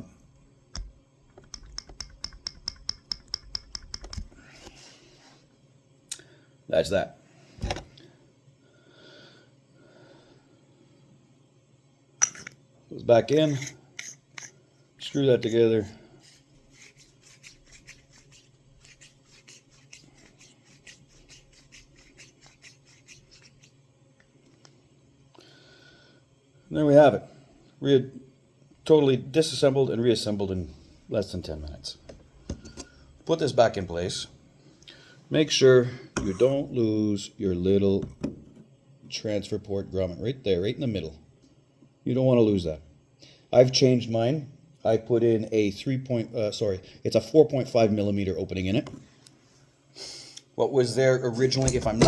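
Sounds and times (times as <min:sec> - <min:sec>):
small metallic valve clicks: 0:01.4 - 0:04.3
metal threads scraping: 0:13.3 - 0:23.8.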